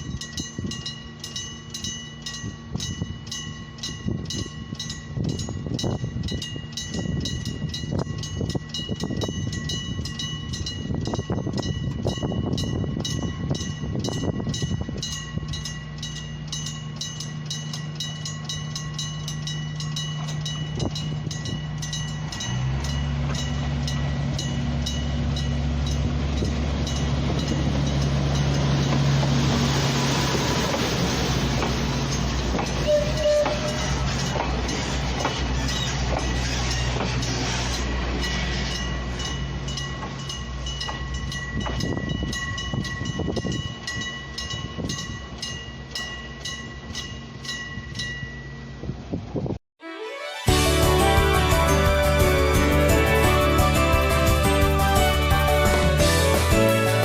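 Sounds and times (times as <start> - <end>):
diesel train engine: 0.0 - 49.5, 50.5 - 57.0
level crossing alarm ringing: 32.0 - 34.1.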